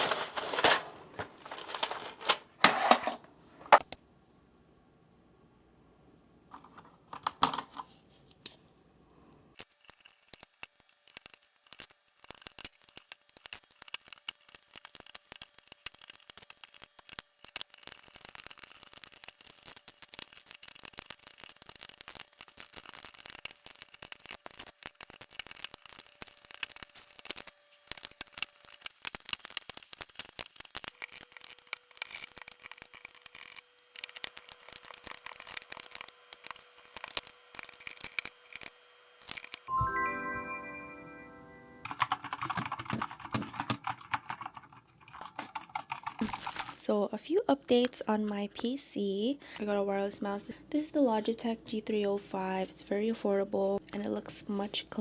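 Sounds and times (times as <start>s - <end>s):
packaging crinkling: 0.0s - 3.8s, 9.6s - 39.7s, 41.9s - 46.8s.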